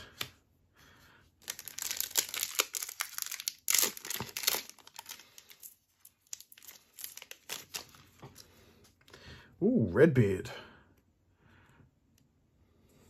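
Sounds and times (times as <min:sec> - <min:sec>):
card pack wrapper tearing and crinkling: 0:01.4 - 0:08.2.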